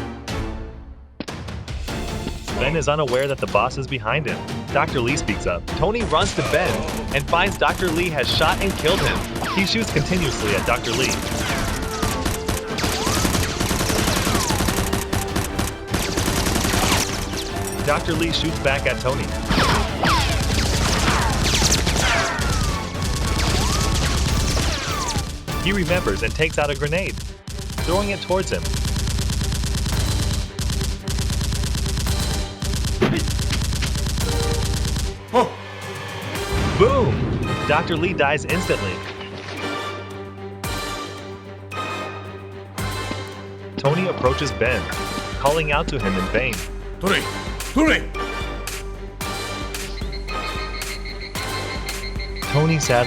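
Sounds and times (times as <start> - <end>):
background music: 0.0 - 53.0
rapid gunfire: 6.3 - 35.2.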